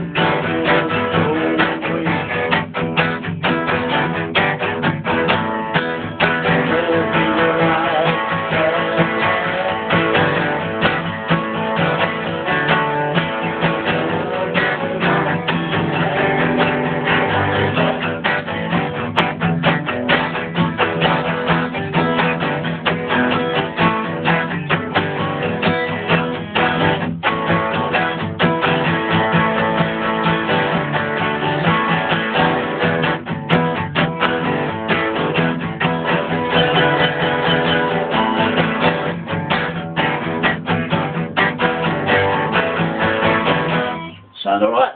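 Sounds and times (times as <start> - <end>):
guitar plucked and strummed: 0.0 - 44.8.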